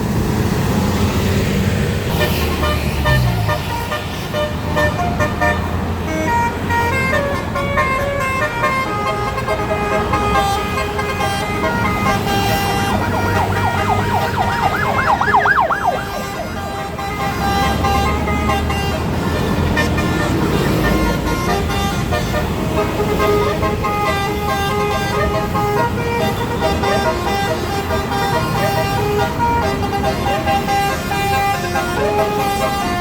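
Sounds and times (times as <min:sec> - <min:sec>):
bus engine rumble: 0:00.0 - 0:33.0
bus horn melody: 0:02.1 - 0:33.0
warbling siren-like wail: 0:11.9 - 0:17.7.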